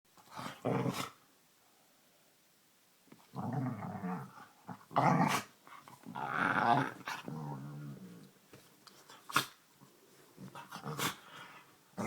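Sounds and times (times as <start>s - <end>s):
dog growling playfully: 0.3s - 1.2s, 3.3s - 8.4s, 10.4s - 11.3s.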